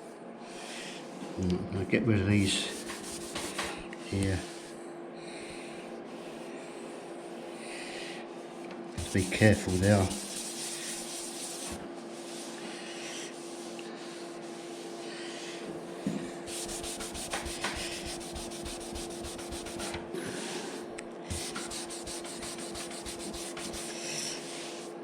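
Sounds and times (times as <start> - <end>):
sandpaper rubbing painted panel: 2.4 - 3.8, 9.0 - 15.6, 16.5 - 20.0, 21.3 - 24.9.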